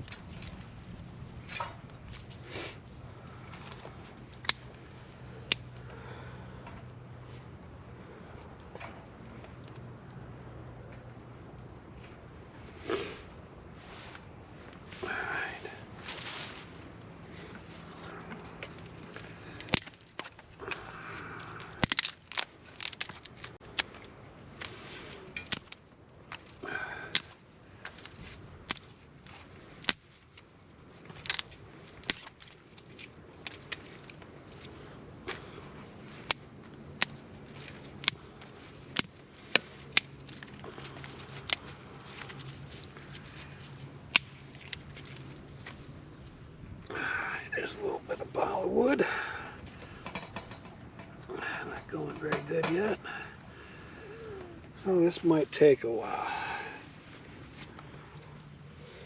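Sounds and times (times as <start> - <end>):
dry kindling snapping and cracking: 3.1 - 7.0, 17.0 - 46.4.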